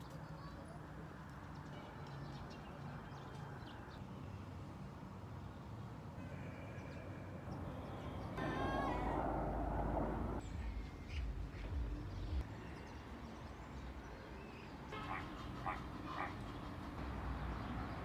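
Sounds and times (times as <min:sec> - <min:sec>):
animal calls: 0:15.0 - 0:17.0.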